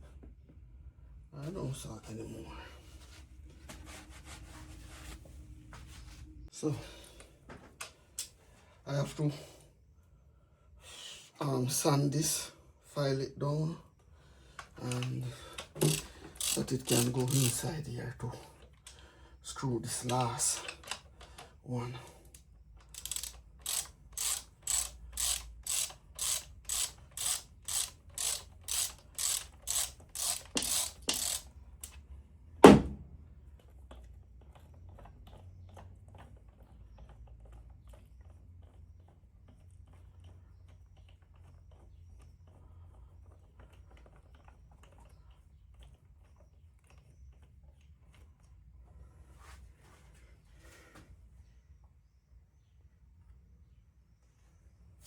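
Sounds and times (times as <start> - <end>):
hand file rasping: 23.0 - 31.4.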